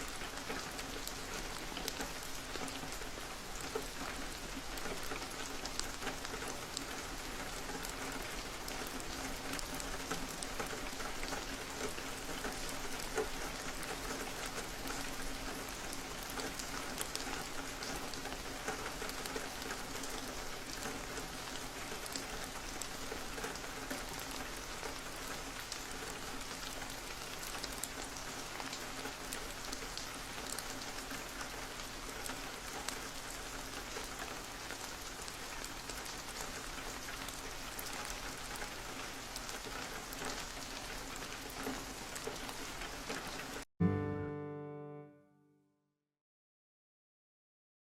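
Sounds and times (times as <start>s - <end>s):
rain pattering on a surface: 0.0s - 43.7s.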